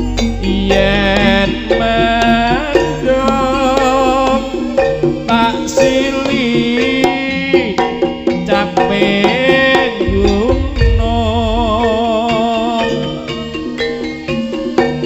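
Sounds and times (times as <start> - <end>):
fast drumming: 0.0 - 13.2
wavering held melody: 9.9 - 14.8.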